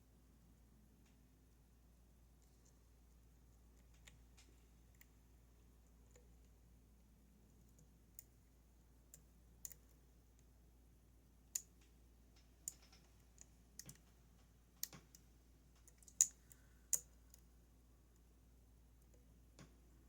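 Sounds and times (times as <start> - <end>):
lock pick clicking on pins: 12.4 - 14.1, 15.8 - 17.4.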